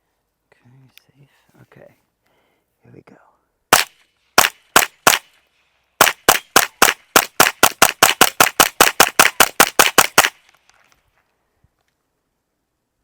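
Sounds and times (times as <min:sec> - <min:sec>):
pistol firing rapid shots: 0:03.7 - 0:05.3, 0:06.0 - 0:10.4.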